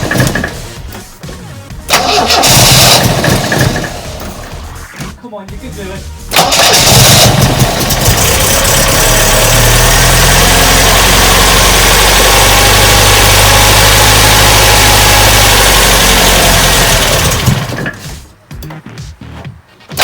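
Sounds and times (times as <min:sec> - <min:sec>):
car engine running fast: 0:06.4 - 0:18.0.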